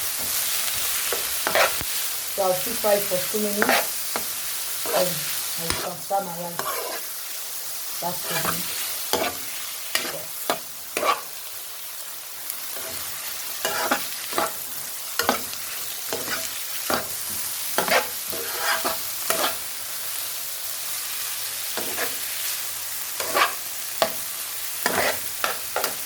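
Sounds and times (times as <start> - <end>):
vegetables sizzling in a pan: 0.0 - 26.0
spatula scraping a pan: 0.2 - 1.9, 3.6 - 5.9, 6.6 - 7.2, 8.1 - 11.4, 12.7 - 19.6, 21.8 - 22.5, 23.2 - 24.2, 24.8 - 26.0.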